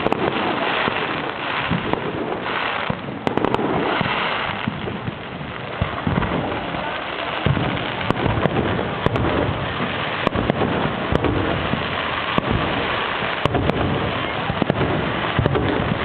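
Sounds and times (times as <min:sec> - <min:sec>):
fireworks crackle and rumble: 0:00.0 - 0:16.0
sharp firework bangs: 0:00.0 - 0:16.0.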